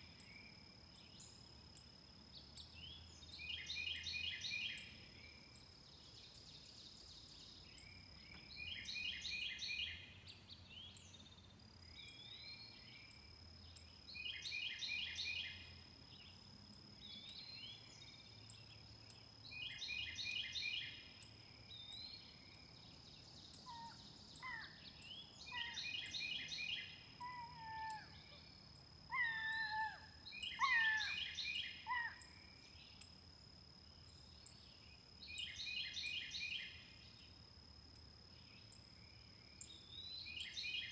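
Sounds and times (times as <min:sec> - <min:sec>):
songbird trilling: 0:23.5 - 0:28.3, 0:29.1 - 0:32.3.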